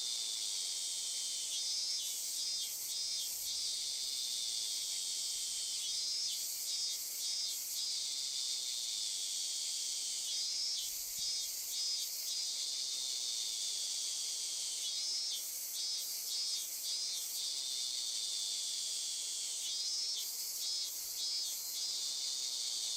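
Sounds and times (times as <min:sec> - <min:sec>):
high-pitched insect buzzing drone: 0:00.0 - 0:22.9
pulsed insect trilling call: 0:19.6 - 0:22.9.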